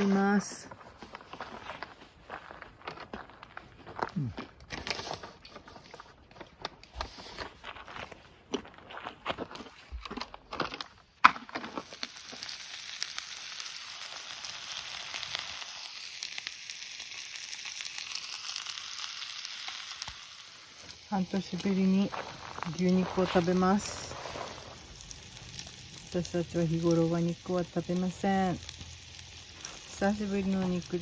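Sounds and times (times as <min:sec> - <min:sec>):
cooking gear clicks and rustles: 0:03.8 - 0:08.2, 0:20.8 - 0:31.0
beef sizzling in a pan: 0:11.8 - 0:31.0.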